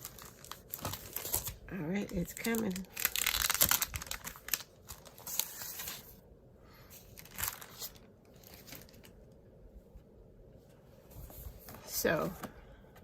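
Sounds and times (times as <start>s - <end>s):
packaging crinkling and rustling: 0.0s - 6.2s, 7.0s - 9.2s.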